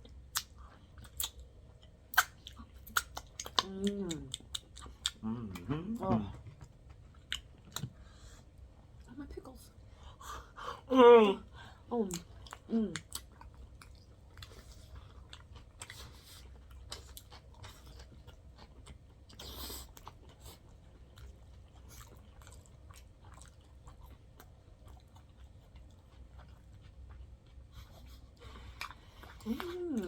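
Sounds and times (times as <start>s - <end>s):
mouth chewing food: 0.0s - 8.2s, 12.0s - 30.0s.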